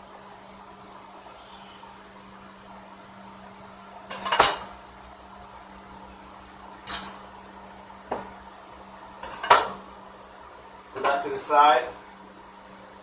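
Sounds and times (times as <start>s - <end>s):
faint steady hum: 0.0s - 13.0s
kitchen things clattering: 4.1s - 4.8s, 6.8s - 7.3s, 9.2s - 9.8s.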